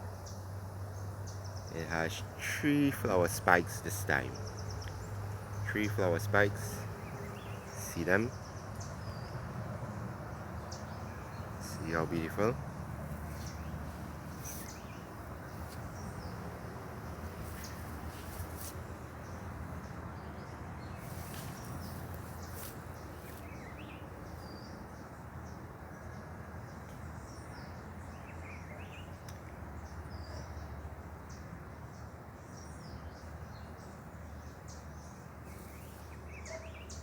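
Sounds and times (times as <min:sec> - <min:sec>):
steady background noise: 0:00.0 - 0:37.0
faint clicks: 0:29.2 - 0:29.5.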